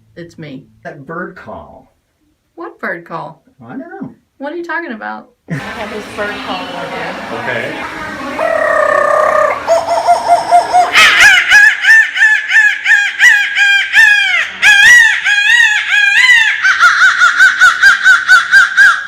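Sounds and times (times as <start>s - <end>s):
woman imitating bird call: 8.4s - 11.6s.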